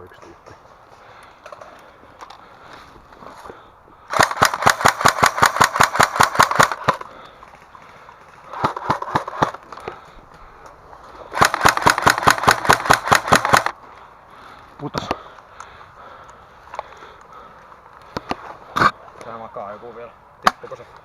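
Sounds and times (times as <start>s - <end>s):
airsoft rifle firing bursts: 4.1s - 7.0s, 8.5s - 9.6s, 11.3s - 13.8s.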